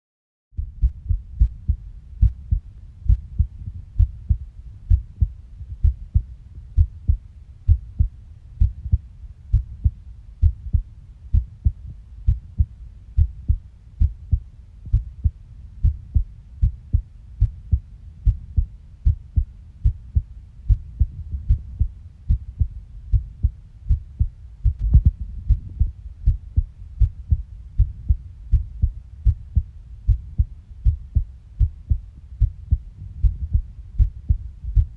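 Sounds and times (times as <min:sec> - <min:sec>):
heartbeat thumps: 0:00.6 - 0:34.9.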